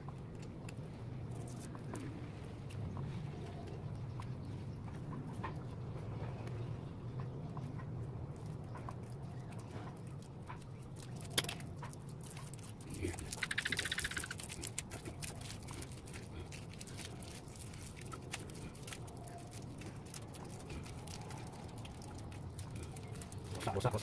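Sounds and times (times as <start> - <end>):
rapid ratchet rattling: 13.3 - 14.4.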